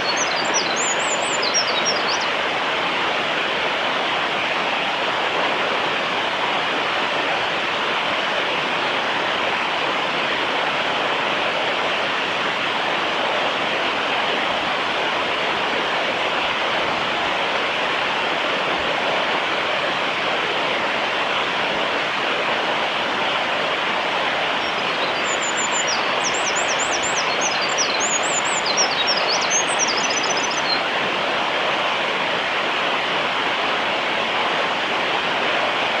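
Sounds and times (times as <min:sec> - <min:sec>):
bird singing high trills: 0:00.0 - 0:02.3, 0:24.6 - 0:30.8
running water rushing: 0:21.0 - 0:36.0.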